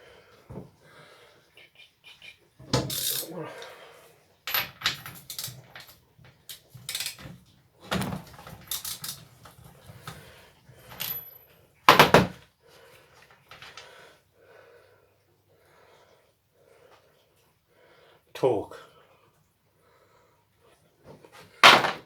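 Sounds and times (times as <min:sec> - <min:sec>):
metallic tool clicks and clatter: 0:02.9 - 0:03.3, 0:04.5 - 0:07.2, 0:08.7 - 0:09.2.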